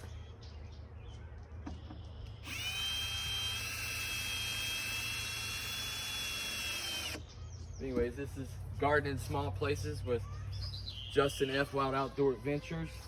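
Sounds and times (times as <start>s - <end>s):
power drill whining: 2.4s - 7.2s.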